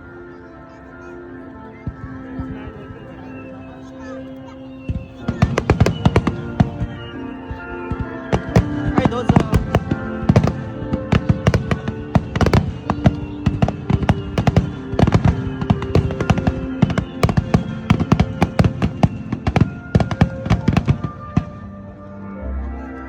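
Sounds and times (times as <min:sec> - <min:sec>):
music with sustained tones: 0:00.0 - 0:23.0
fireworks bangs: 0:04.8 - 0:21.8.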